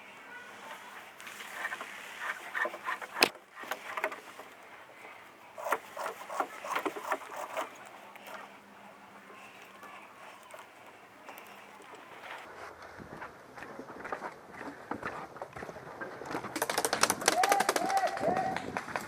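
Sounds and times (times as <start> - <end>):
sharp crack: 0.0 - 8.6.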